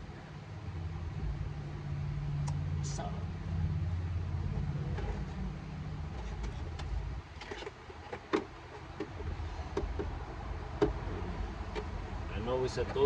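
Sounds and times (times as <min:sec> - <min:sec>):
low hum: 0:00.0 - 0:07.7.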